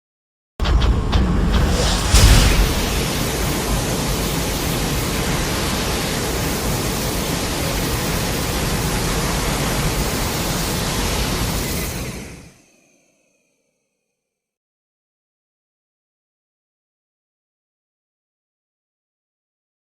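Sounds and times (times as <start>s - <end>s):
loud rushing hiss: 1.3s - 3.6s.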